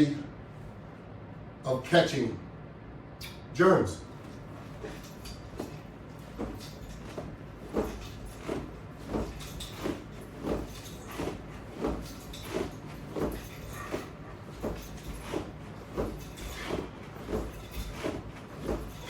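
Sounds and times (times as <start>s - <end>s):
rhythmic rubbing swishing: 4.2s - 19.0s.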